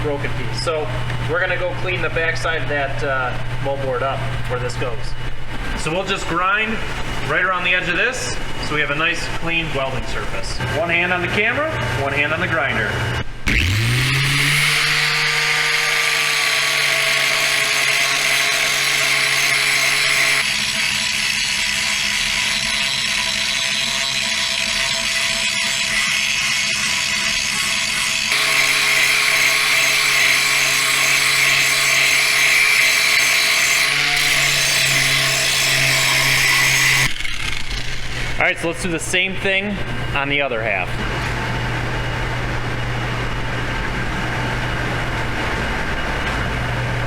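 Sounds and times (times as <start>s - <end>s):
angle grinder grinding steel: 13.4s - 40.8s.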